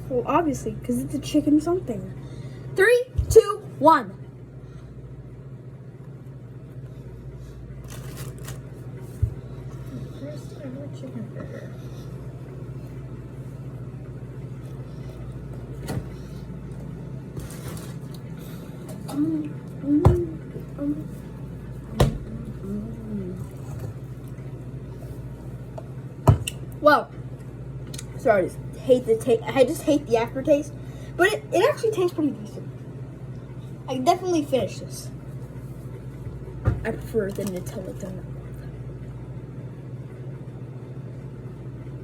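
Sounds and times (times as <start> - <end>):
low hum: 0.0 - 31.2
wrapper rustling: 7.8 - 8.8.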